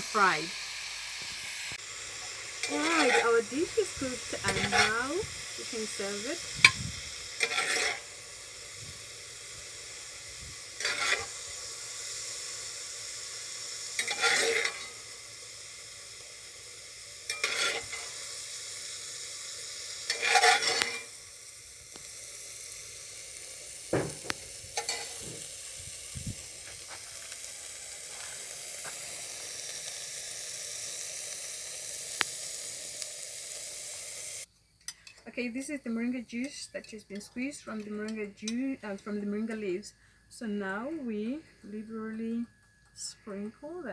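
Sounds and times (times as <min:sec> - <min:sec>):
stir-fry sizzling in a wok: 0:00.0 - 0:35.9
utensil scraping through food: 0:01.2 - 0:34.5.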